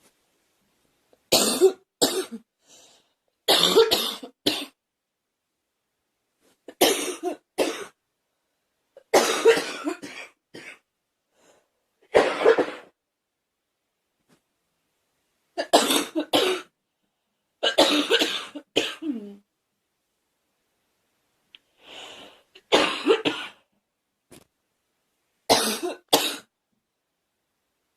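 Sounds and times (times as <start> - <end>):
girl coughing: 1.3 - 2.5, 3.5 - 4.8, 6.7 - 8.0, 9.1 - 10.8, 12.1 - 12.9, 15.6 - 16.7, 17.6 - 19.4, 22.7 - 23.6, 25.5 - 26.5.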